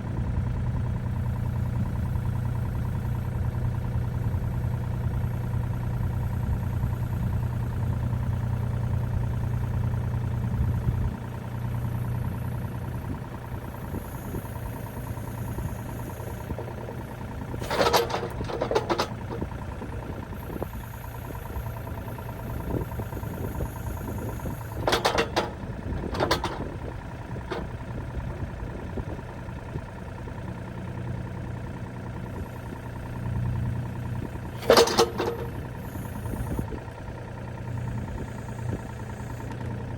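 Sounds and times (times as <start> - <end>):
engine idling: 0.0 - 39.9.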